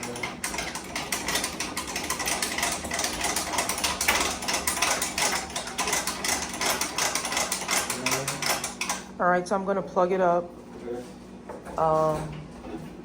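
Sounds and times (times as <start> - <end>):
mechanical clicking and rattling: 0.0 - 9.1.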